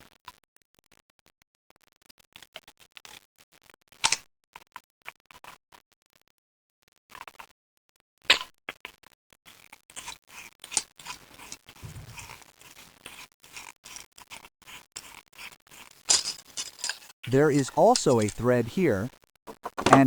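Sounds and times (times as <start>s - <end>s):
desoldering pump clicks and scrapes: 16.1s - 18.4s.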